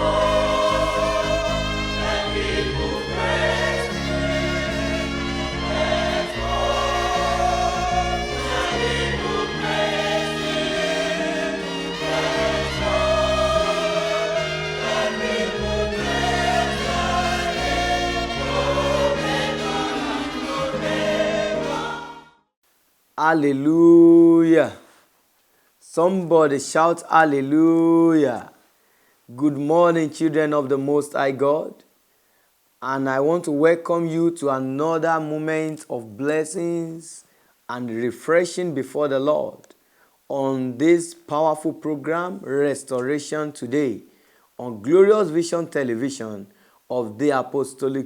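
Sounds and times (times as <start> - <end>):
choir singing gospel music: 0.0 - 22.4.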